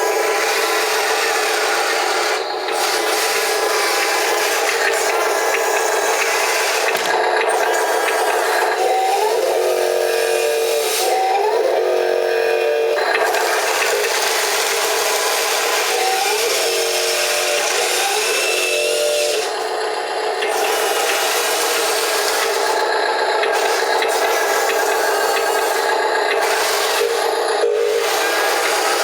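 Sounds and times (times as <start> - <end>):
wheel loader whirring and grinding: 0.0 - 29.0.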